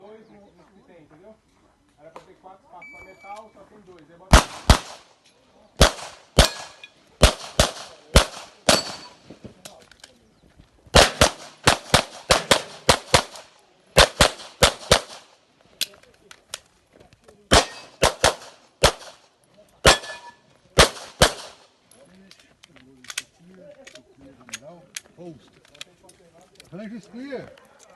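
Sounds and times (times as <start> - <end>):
pistol shots: 4.3 - 5.1, 5.8 - 9.2, 10.9 - 15.3, 17.5 - 19.2, 19.8 - 21.6.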